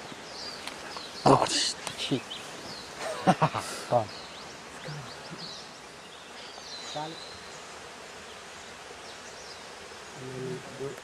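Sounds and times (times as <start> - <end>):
faint bird chirps: 0.0 - 8.4
insect buzz: 0.0 - 11.0.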